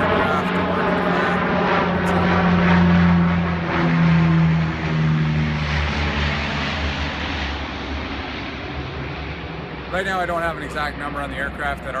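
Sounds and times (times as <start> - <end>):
propeller plane flying overhead: 0.0 - 12.0.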